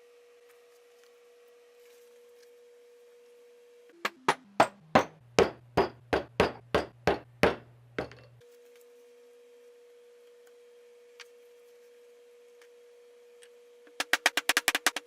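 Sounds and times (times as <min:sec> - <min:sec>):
hammer striking metal: 0:04.0 - 0:08.3.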